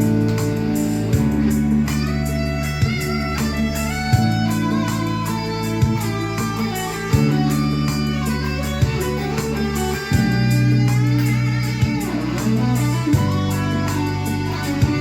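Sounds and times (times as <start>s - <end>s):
electric guitar music: 0.0s - 15.0s.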